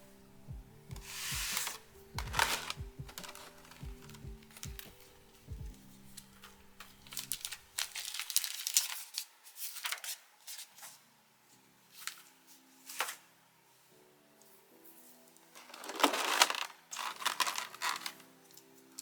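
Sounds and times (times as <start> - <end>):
plastic packaging crinkling: 1.0 - 10.1, 15.6 - 18.4.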